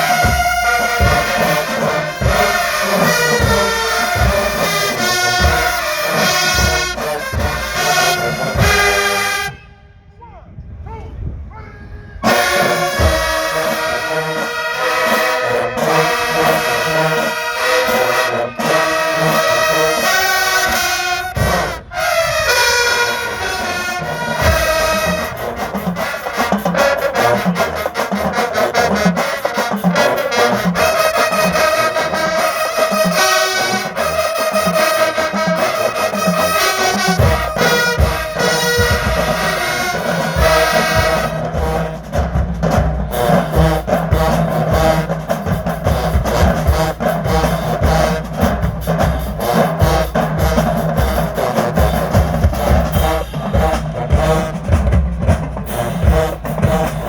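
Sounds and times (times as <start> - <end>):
steady drum beat: 0.0 - 9.6, 12.2 - 57.0
marching band brass playing: 0.0 - 10.2, 12.1 - 57.0.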